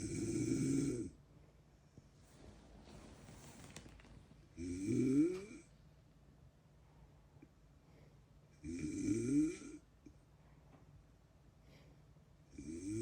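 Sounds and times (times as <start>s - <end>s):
man snoring: 0.0s - 1.1s, 4.6s - 5.6s, 8.6s - 9.8s, 12.6s - 13.0s
faint breath: 11.6s - 12.2s.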